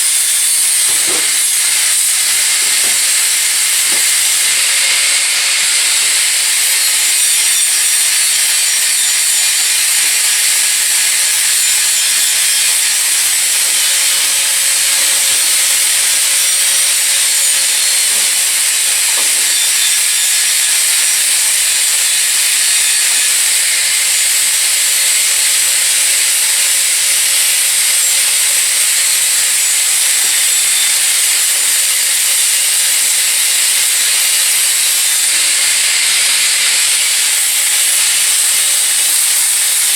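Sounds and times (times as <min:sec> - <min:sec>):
stripping wheel grinding sheet metal: 0:00.0 - 0:27.7.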